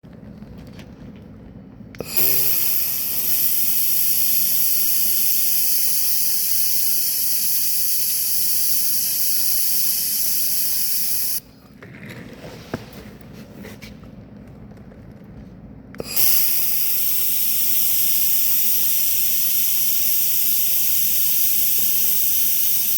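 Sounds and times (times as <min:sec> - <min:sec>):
laser welder hissing: 0:02.0 - 0:11.4, 0:16.0 - 0:22.9.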